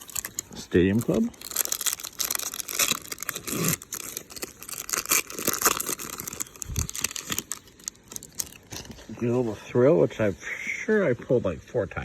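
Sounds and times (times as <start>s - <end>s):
foil wrapper tearing and crinkling: 0.0s - 9.1s.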